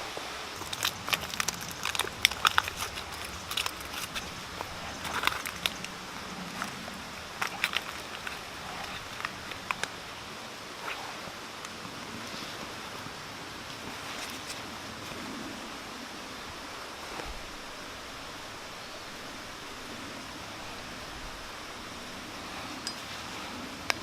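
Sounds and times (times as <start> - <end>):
wood fire crackling: 0.0 - 10.4
mountain stream rushing: 0.0 - 24.0.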